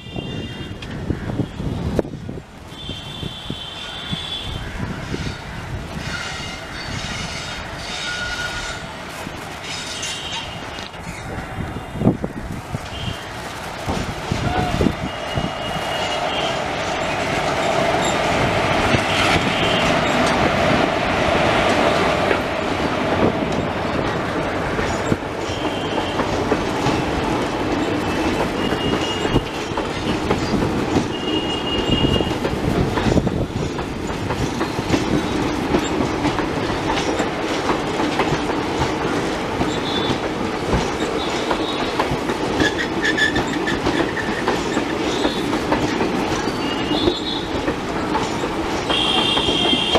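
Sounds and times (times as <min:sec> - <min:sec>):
high wheel squeals: 0:06.0 - 0:08.9, 0:42.6 - 0:45.5, 0:46.4 - 0:47.6
train wheels clattering over rail joints: 0:15.1 - 0:49.9.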